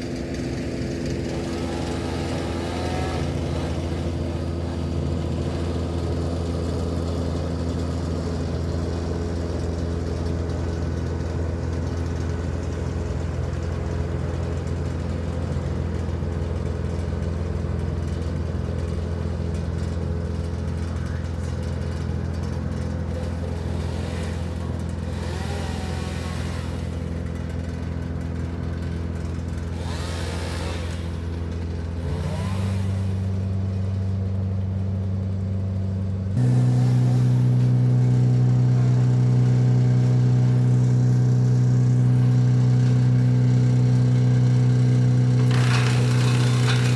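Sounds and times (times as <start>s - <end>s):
engine running steadily: 0.0s - 46.9s.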